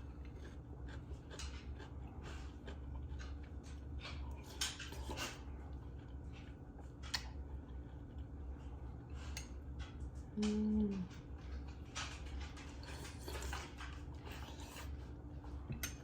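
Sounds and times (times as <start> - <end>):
crunching and chewing vegetables: 0.0 - 16.0
steady low hum: 0.0 - 16.0
cutlery clicking on a bowl: 15.7 - 16.0.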